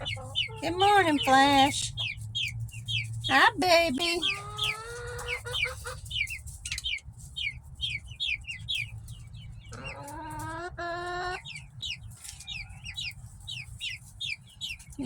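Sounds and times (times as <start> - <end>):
drawn-out chicken call: 0.0 - 2.2, 4.0 - 6.3, 9.7 - 13.9
chickens chirping: 0.0 - 15.0.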